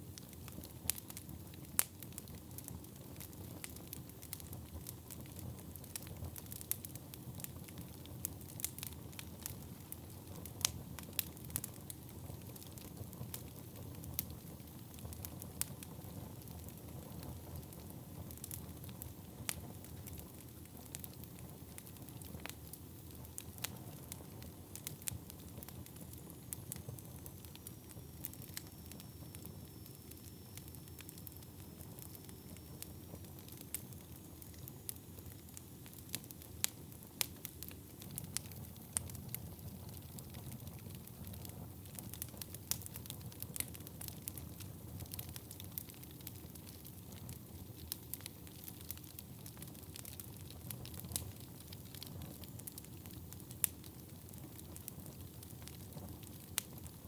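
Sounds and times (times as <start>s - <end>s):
fire crackling and popping: 0.0s - 57.0s
low rumble of fire flames: 0.0s - 57.0s.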